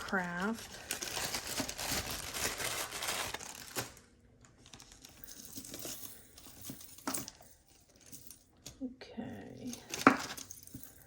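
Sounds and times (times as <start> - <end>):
plastic packaging crinkling: 0.0 - 8.1.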